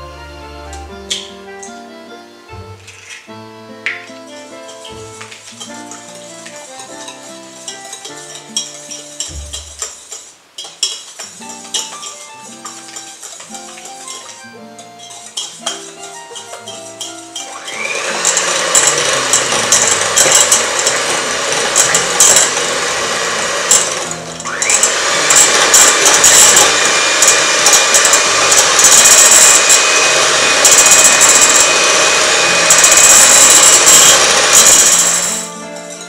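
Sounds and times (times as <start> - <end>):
electric mixer whirring: 17.4 - 35.5.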